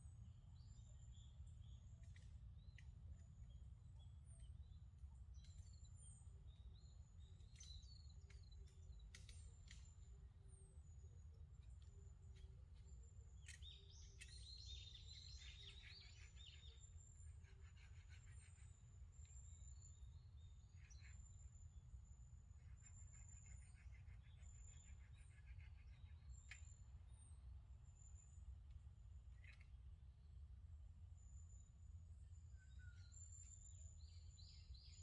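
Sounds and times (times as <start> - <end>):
high whistled birdsong: 5.4 - 17.4, 31.2 - 35.0.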